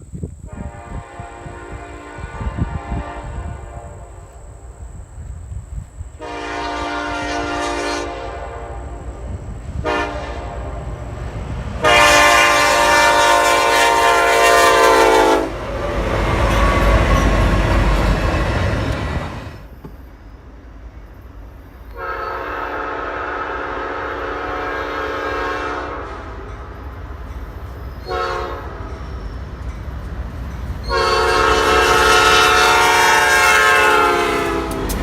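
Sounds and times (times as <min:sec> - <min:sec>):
train rumbling past: 0:00.0 - 0:35.0
locomotive air horn: 0:00.5 - 0:04.6, 0:06.2 - 0:11.1, 0:11.8 - 0:17.8, 0:21.9 - 0:26.5, 0:28.0 - 0:29.0, 0:30.9 - 0:35.0
wheels clattering on rail: 0:26.4 - 0:28.1, 0:28.7 - 0:33.0, 0:33.8 - 0:35.0.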